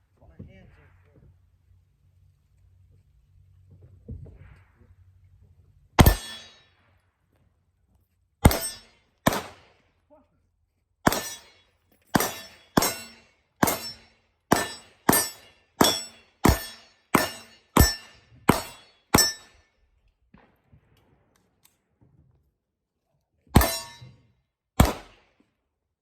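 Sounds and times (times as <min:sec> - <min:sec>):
pistol shots with ringing tail: 0:06.0 - 0:06.8, 0:08.4 - 0:09.8, 0:11.0 - 0:19.6, 0:23.6 - 0:24.1, 0:24.8 - 0:25.3.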